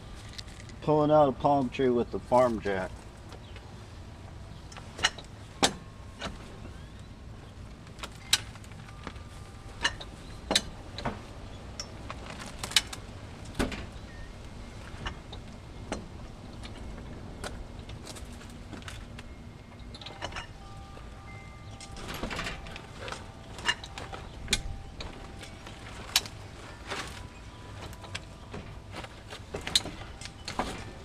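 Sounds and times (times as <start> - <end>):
farm jack clanking and rattling: 8.0 - 31.0.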